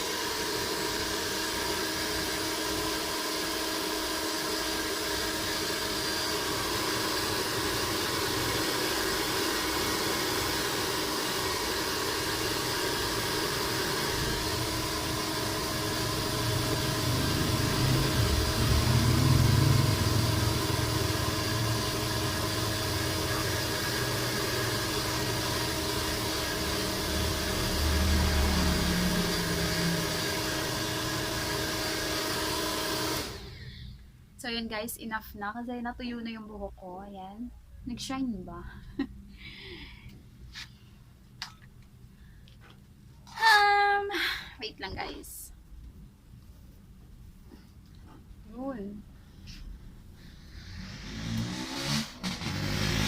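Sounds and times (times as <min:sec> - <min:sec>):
hair dryer running: 0:00.0 - 0:33.8, 0:50.4 - 0:53.0
deep rumble: 0:17.0 - 0:21.4.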